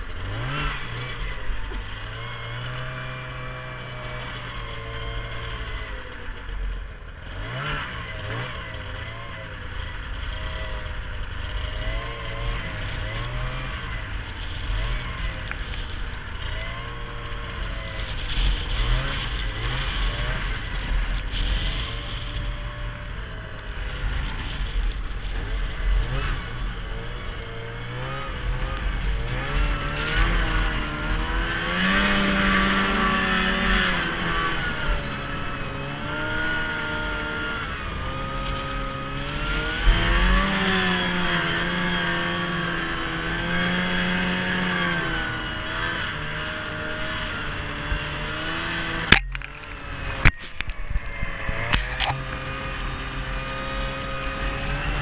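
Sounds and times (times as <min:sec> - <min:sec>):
snowmobile engine revving: 0:00.0 - 0:55.0.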